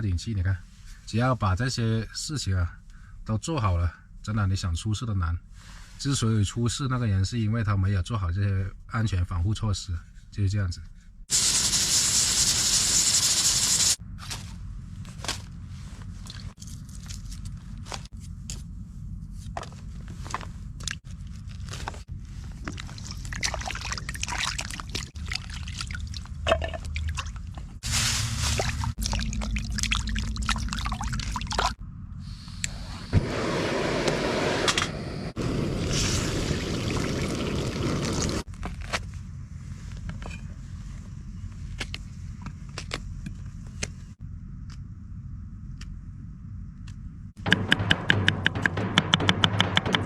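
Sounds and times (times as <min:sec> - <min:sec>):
water pouring and trickling: 0:22.6 - 0:31.8, 0:35.9 - 0:38.5
clinks and knocks: 0:47.4 - 0:50.0
music with tapping beat: 0:47.4 - 0:50.0.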